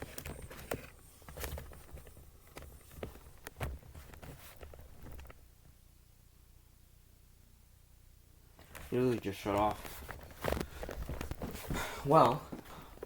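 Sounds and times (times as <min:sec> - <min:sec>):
footsteps: 0:08.6 - 0:13.0.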